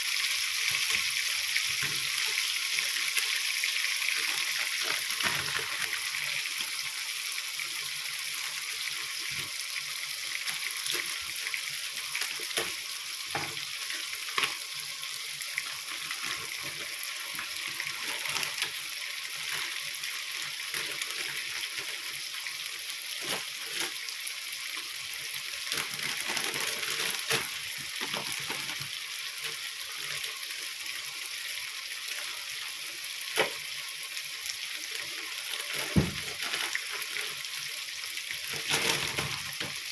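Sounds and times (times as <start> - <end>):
food sizzling in a pan: 0.0 - 39.9.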